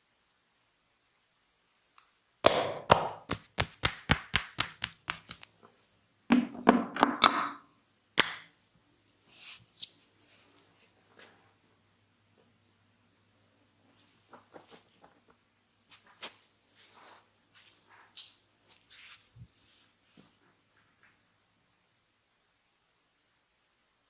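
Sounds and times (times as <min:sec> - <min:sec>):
hands slapping body: 0:02.5 - 0:05.5, 0:08.2 - 0:08.5.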